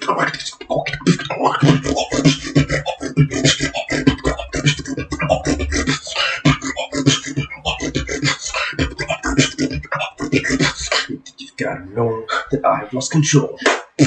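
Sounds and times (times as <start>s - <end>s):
beatboxing percussive clicks: 0.0s - 11.6s, 13.6s - 14.0s
deep bass hum by mouth: 3.3s - 6.7s.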